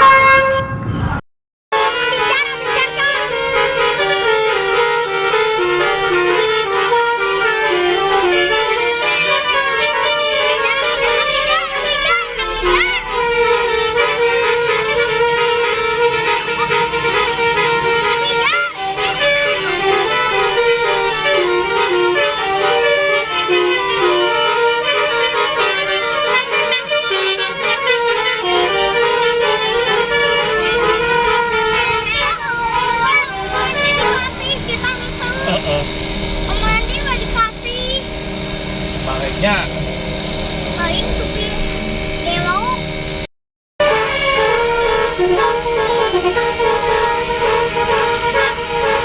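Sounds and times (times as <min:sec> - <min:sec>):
musical air horn melody: 0:00.0 - 0:01.1, 0:01.7 - 0:49.0.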